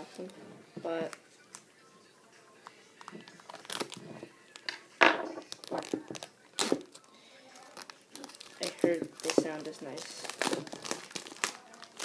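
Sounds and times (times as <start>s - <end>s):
packaging crinkling and rustling: 3.0s - 4.6s, 5.5s - 12.0s
sharp packaging crackle: 3.4s - 4.0s, 5.5s - 12.0s.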